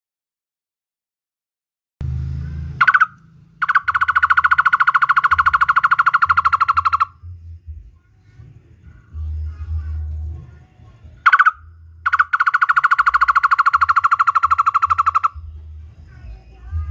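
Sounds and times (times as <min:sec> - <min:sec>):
low hum: 0:02.0 - 0:16.9
barbet calling hollow notes: 0:02.7 - 0:07.4, 0:11.2 - 0:15.5.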